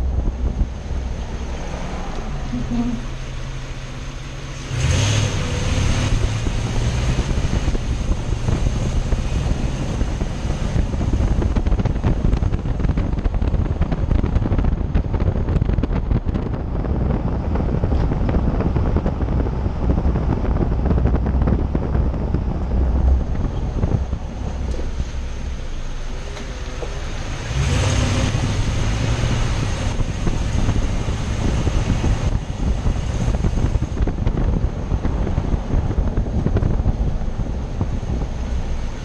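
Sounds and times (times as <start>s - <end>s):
rushing noise: 0.0s - 39.0s
truck engine hum: 0.0s - 39.0s.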